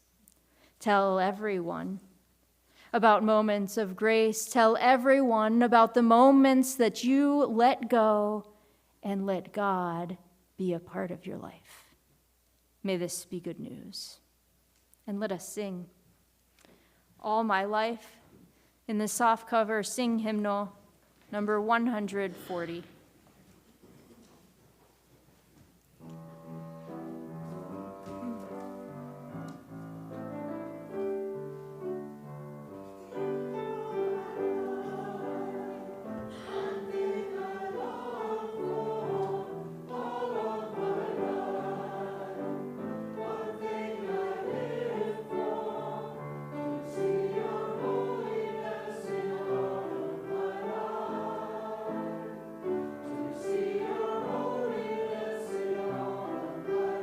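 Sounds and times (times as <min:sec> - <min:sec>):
congregation singing a hymn: 0:30.6 - 0:57.0.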